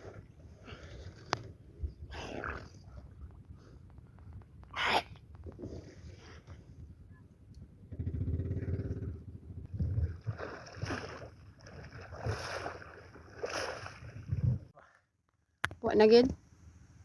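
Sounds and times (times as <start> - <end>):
water surging against boat: 10.0 - 14.7.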